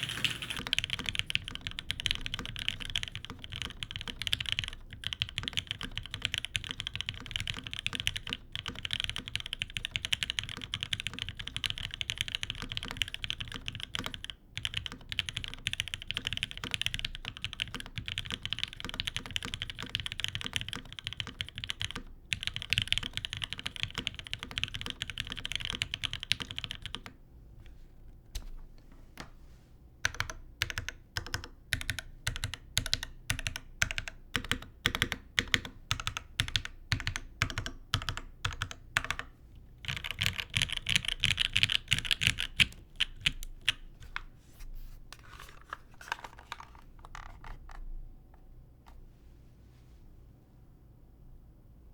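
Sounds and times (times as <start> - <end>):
mechanical keyboard typing: 0.0 - 27.2, 30.0 - 44.3, 45.6 - 47.8.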